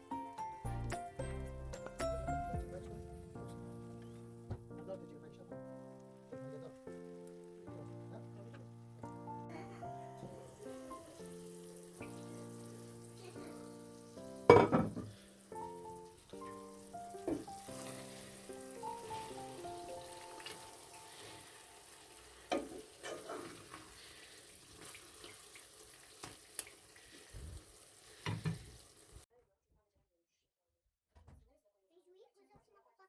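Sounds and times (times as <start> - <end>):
soft background music: 0.0 - 22.9
frying sizzle: 0.0 - 29.3.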